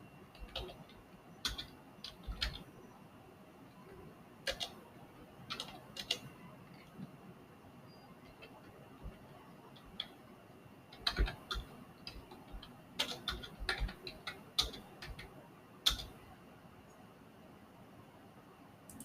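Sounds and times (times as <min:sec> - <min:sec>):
keyboard typing: 0:00.2 - 0:02.7, 0:03.7 - 0:04.8, 0:05.4 - 0:07.1, 0:08.2 - 0:10.2, 0:10.9 - 0:16.2.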